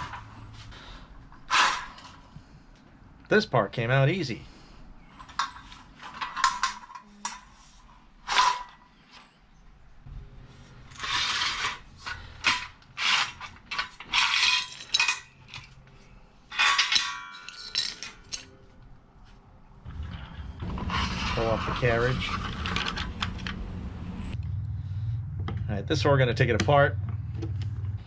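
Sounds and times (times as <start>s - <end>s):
metal parts clattering and scraping: 0.0s - 2.4s, 5.0s - 9.2s, 10.7s - 18.7s, 19.9s - 23.6s
ringing metal clink: 16.5s - 18.6s.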